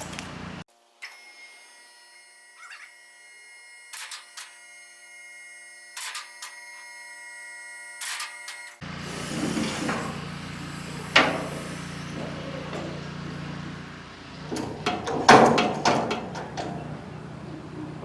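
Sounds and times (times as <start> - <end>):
metal clanks and knocks: 11.1 - 13.8, 14.4 - 17.0.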